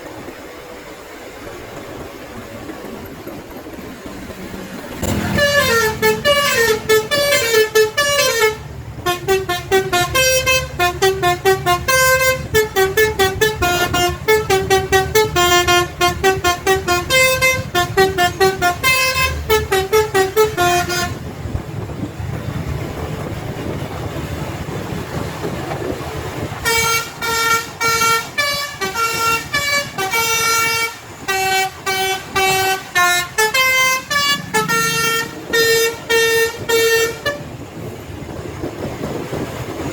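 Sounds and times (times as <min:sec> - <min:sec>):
steady low rumble: 0:00.0 - 0:39.9
bus horn playing rapid tune: 0:05.0 - 0:21.3, 0:26.6 - 0:37.7.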